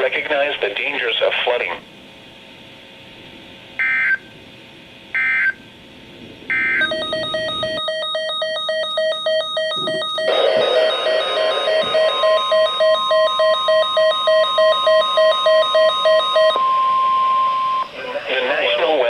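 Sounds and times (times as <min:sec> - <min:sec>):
digital data tone bursts: 0:06.5 - 0:19.0
rapidly pulsing electronic beeping: 0:06.5 - 0:19.0.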